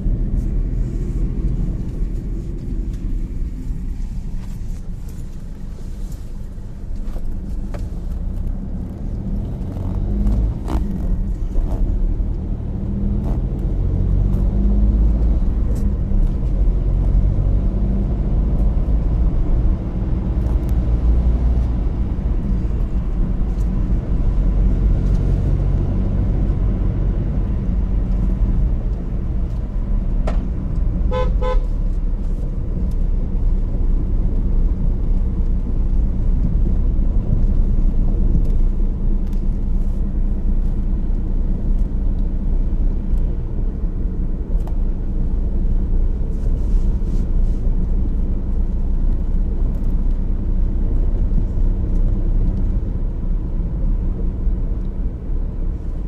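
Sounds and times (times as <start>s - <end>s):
low rumble: 0.0s - 56.0s
pulsing horn toot: 31.1s - 31.8s.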